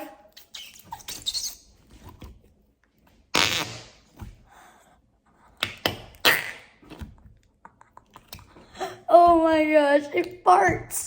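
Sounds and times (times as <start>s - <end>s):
squelchy putty fart noises: 3.3s - 4.1s, 6.1s - 6.9s.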